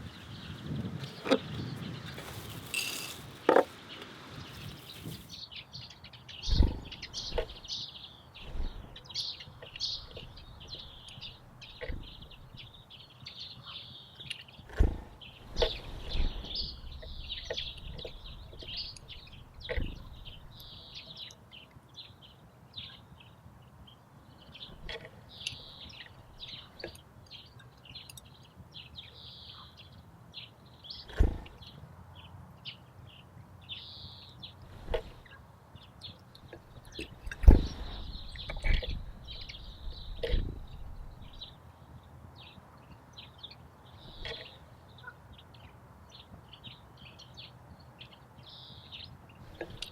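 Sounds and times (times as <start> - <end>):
songbirds chirping and trilling: 0.0 - 49.9.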